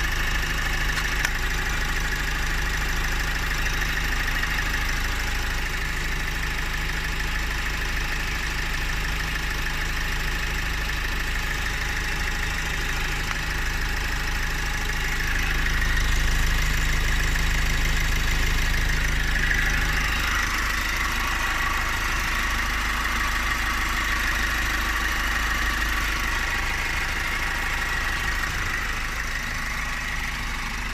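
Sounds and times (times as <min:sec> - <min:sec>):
car engine idling: 0:00.0 - 0:30.9
high whine: 0:18.5 - 0:30.9.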